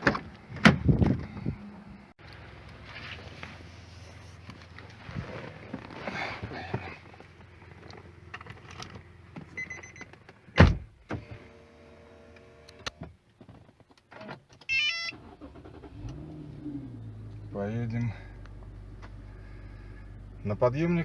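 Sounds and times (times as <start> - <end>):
car door thump: 10.6 - 10.9.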